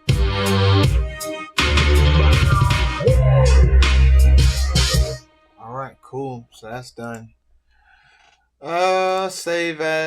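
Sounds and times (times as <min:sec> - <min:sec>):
hip-hop beat: 0:00.0 - 0:07.3.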